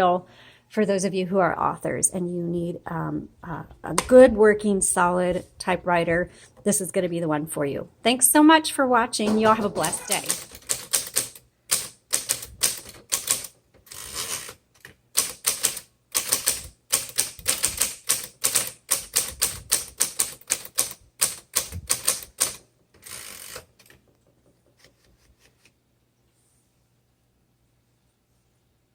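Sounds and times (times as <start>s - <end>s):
typewriter keys striking: 9.3s - 13.6s, 15.2s - 22.6s
typewriter rasping: 9.3s - 14.6s, 15.2s - 24.0s.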